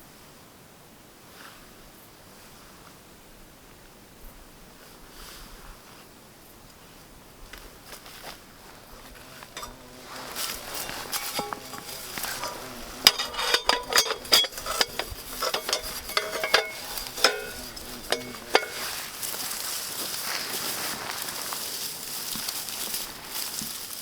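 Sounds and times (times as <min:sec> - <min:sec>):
metal pieces clinking and clanking: 0:09.6 - 0:19.1.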